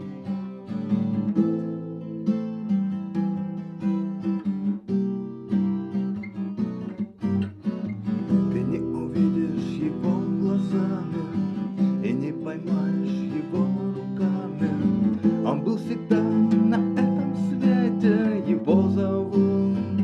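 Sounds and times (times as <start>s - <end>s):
acoustic guitar strumming: 0.0s - 20.0s.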